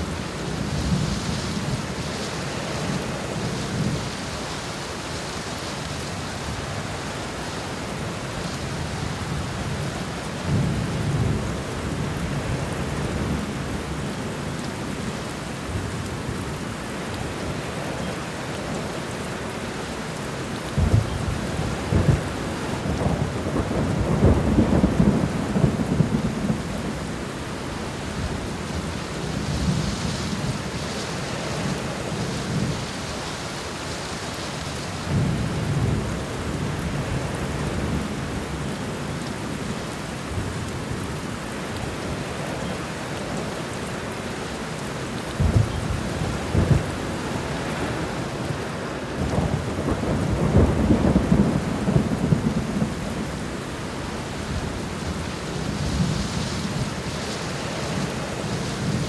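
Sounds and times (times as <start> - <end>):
heavy rain: 0.0 - 59.0
thunder rumbling: 20.7 - 33.2, 45.3 - 59.0.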